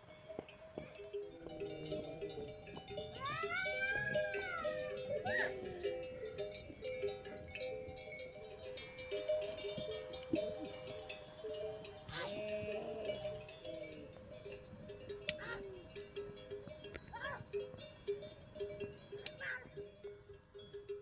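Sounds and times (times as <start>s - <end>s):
livestock neck bells clinking: 0.0s - 21.0s
animal call: 3.2s - 6.4s, 11.7s - 14.1s.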